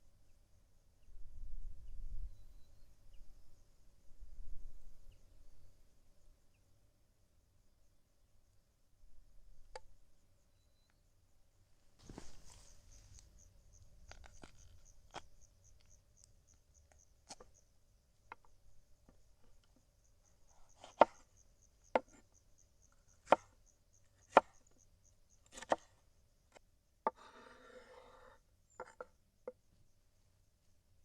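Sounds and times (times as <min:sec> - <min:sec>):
scraping rustle: 0:12.0 - 0:13.3.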